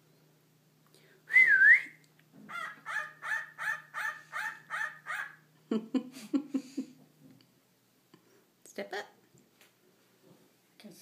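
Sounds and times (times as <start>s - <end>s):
cockatiel harsh calls: 2.5s - 5.5s.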